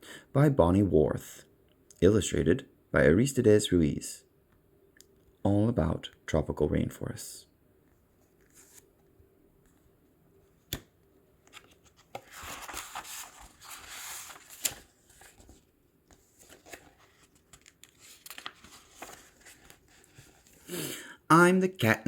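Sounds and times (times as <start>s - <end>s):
paper rustling and crinkling: 8.2s - 8.9s, 11.4s - 20.6s
book pages turning: 8.2s - 9.1s, 10.6s - 20.6s.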